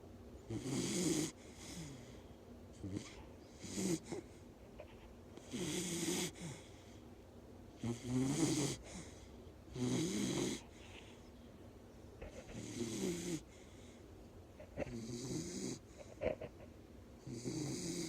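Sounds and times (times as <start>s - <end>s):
dog snoring: 0.5s - 2.2s, 2.8s - 4.4s, 5.4s - 6.7s, 7.8s - 11.1s, 12.3s - 13.8s, 14.7s - 16.5s, 17.2s - 18.0s
quiet breathing: 1.2s - 7.2s, 7.8s - 16.5s.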